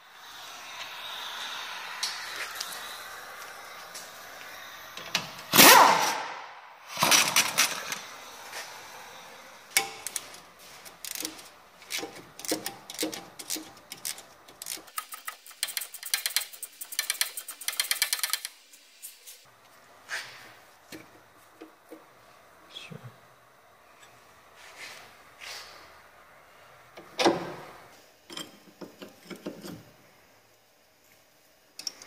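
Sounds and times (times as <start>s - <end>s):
loud tool bursts: 0.4s - 8.0s
ratchet rattling: 11.0s - 18.6s.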